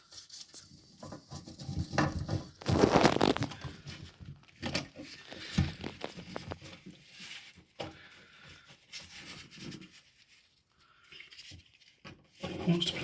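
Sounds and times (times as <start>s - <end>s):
scraping rustle: 0.0s - 7.8s.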